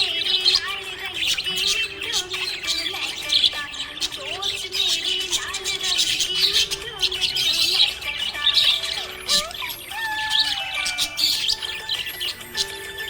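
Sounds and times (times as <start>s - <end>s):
budgerigars chirping and warbling: 0.0s - 13.0s.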